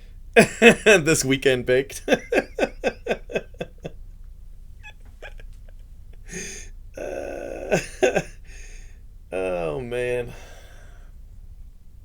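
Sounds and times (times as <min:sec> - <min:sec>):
man's excited exclamation: 0:06.3 - 0:08.4
quick laugh-like breaths: 0:06.3 - 0:08.9.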